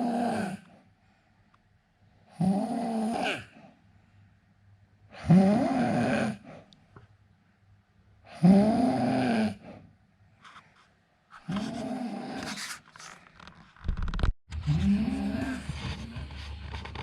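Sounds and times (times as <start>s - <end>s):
man snoring: 0.0s - 0.6s, 2.3s - 3.5s, 5.2s - 6.4s, 8.3s - 9.7s, 14.7s - 16.2s.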